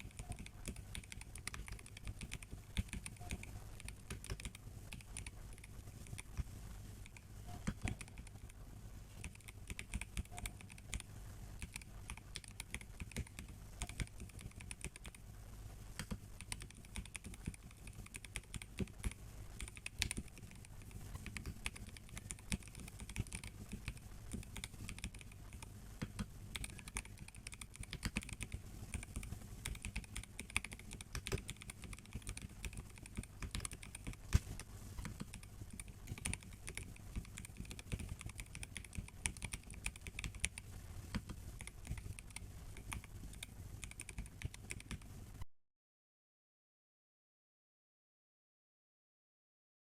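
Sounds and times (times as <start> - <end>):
mechanical keyboard typing: 0.0 - 8.6, 9.2 - 15.2, 16.0 - 45.1.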